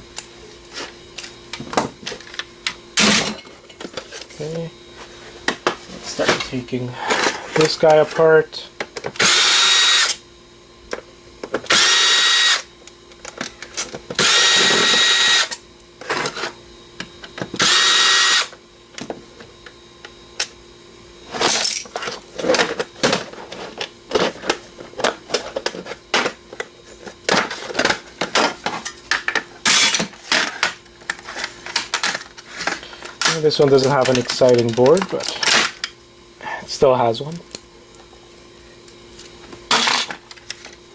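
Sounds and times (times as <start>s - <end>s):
power drill whirring: 9.2s - 10.2s, 11.7s - 12.7s, 14.2s - 15.6s, 17.6s - 18.6s
metal and plastic parts rattling: 21.4s - 35.9s.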